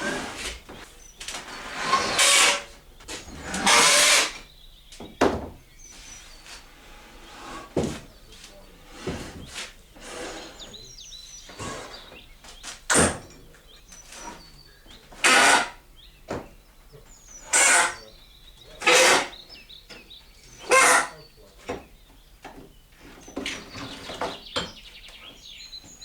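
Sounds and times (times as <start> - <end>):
objects knocking and thudding: 5.0 - 5.6, 7.6 - 8.4, 16.3 - 16.6.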